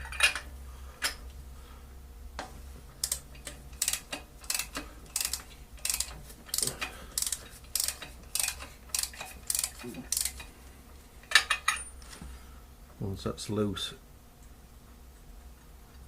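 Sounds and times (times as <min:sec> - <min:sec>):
socket ratchet clicking: 0:03.0 - 0:10.4.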